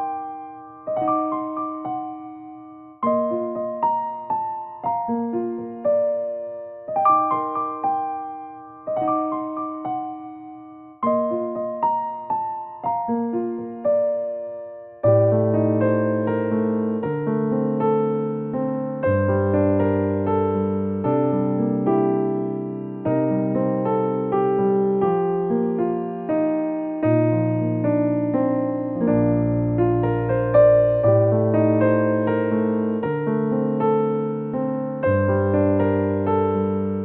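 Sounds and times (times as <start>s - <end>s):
gentle piano melody: 0.0s - 37.0s.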